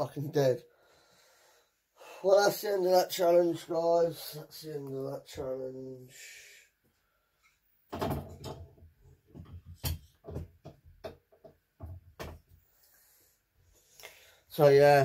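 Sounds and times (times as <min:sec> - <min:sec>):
objects knocking and clattering: 0:07.9 - 0:12.6.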